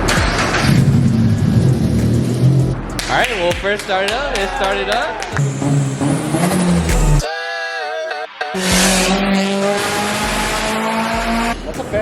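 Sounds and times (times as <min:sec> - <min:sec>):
car engine running steadily: 0:00.0 - 0:03.0.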